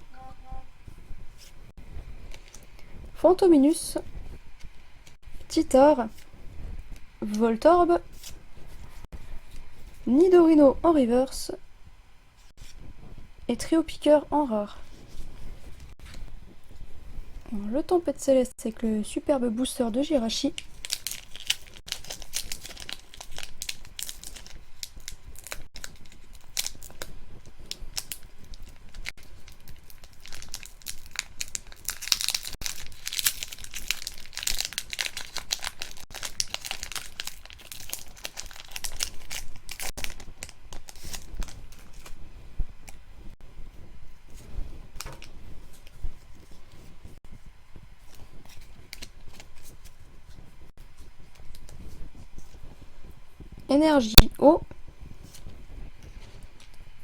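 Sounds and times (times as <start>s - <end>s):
foil wrapper crinkling and tearing: 2.3s - 2.8s, 20.5s - 42.2s, 48.0s - 50.0s.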